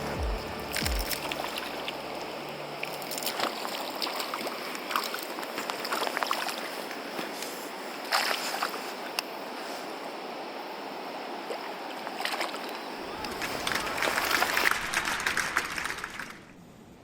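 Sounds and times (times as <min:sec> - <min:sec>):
background music: 0:00.0 - 0:03.3
mountain stream flowing: 0:00.0 - 0:16.8.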